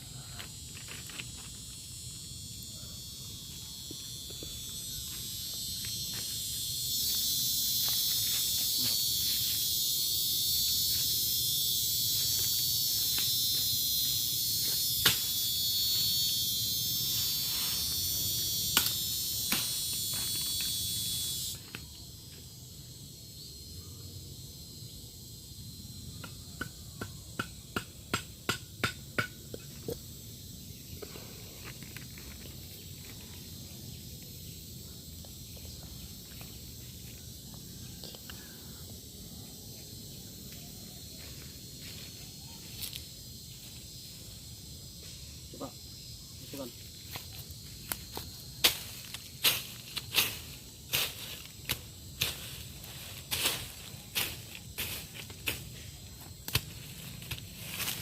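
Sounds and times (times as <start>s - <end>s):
faint insect hum: 0.0s - 58.0s
high-pitched insect chorus: 0.0s - 58.0s.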